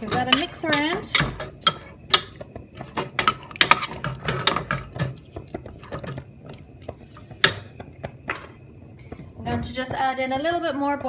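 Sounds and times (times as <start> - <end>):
utensil stirring stew in pot: 0.0 - 8.6.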